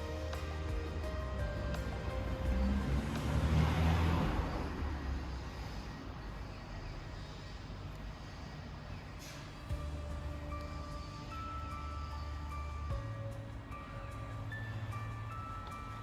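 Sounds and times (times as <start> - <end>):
steady low hum: 0.0 - 16.0
vehicle engine: 0.0 - 16.0.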